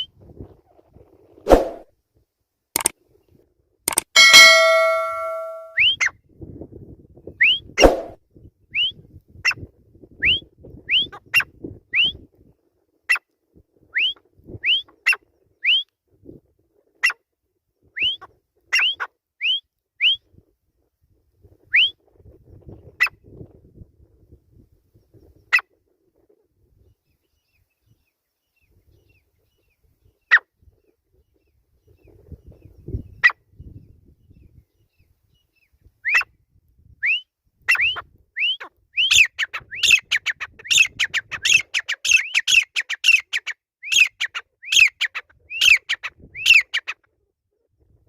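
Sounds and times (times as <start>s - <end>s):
bird sharp clicking notes: 3.9s - 5.7s.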